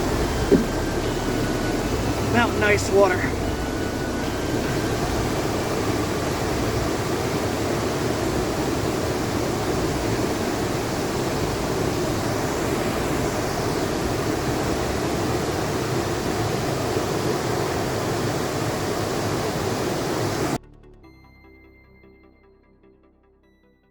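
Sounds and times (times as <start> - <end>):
brook water flowing: 0.0 - 20.6.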